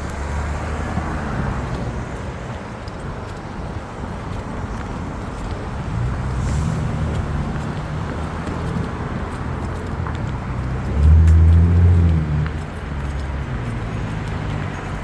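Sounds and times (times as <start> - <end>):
vehicle engines humming: 0.0 - 15.0
loud vehicle engine: 5.7 - 15.0.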